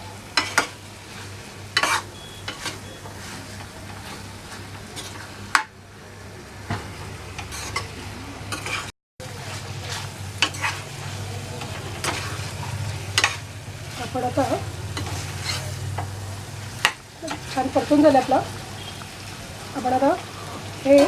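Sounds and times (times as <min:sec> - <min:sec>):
chicken sizzling in a hot pan: 0:00.0 - 0:05.6, 0:08.6 - 0:21.0
utensil scraping against pan: 0:00.4 - 0:05.3, 0:07.4 - 0:16.2, 0:16.8 - 0:18.5.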